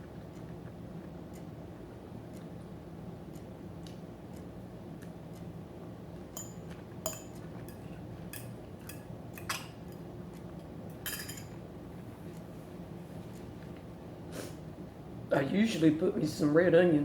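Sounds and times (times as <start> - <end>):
cutlery clinking on a plate: 6.4 - 10.0, 10.9 - 11.6.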